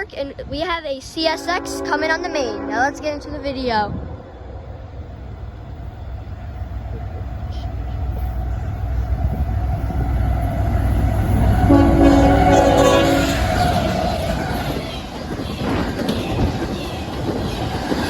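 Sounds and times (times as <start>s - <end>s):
diesel locomotive rumble: 0.0s - 18.0s
train air horn chord: 1.3s - 3.5s, 11.6s - 13.5s.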